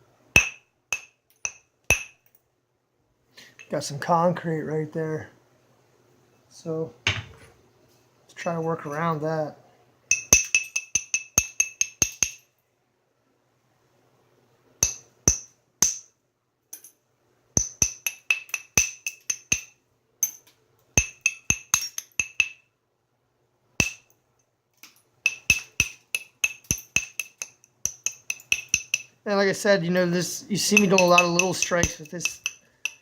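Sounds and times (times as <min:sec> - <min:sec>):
hammerstone tapping stone: 0:00.4 - 0:02.2, 0:10.1 - 0:12.4, 0:14.8 - 0:16.1, 0:17.6 - 0:20.4, 0:21.0 - 0:22.6, 0:23.8 - 0:24.1, 0:25.3 - 0:29.1, 0:30.6 - 0:33.0.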